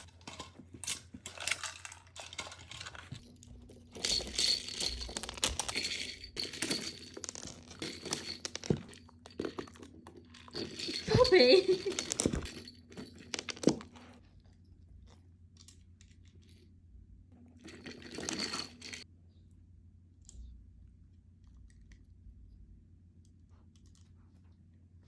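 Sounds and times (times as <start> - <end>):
puppy chewing and crunching: 0.0 - 11.2.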